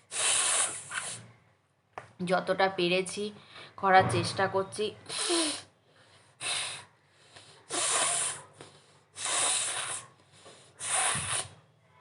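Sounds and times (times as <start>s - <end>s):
woman blowing through nose: 0.0s - 1.3s, 5.1s - 5.7s, 6.4s - 6.8s, 7.7s - 8.5s, 9.2s - 10.1s, 10.8s - 11.6s
quiet breaths: 3.3s - 3.8s, 5.0s - 12.0s.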